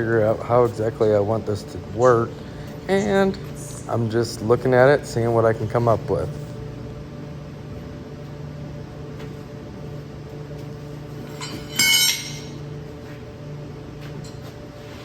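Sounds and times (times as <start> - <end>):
steady low hum: 0.0 - 15.0
metallic clink: 11.4 - 12.6.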